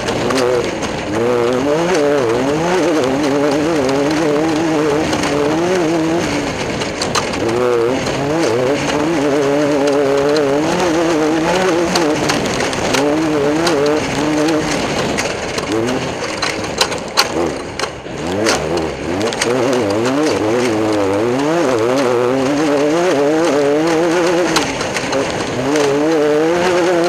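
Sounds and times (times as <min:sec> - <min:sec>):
race car engine revving: 0:00.0 - 0:27.0
sharp clicks and knocks: 0:00.0 - 0:27.0.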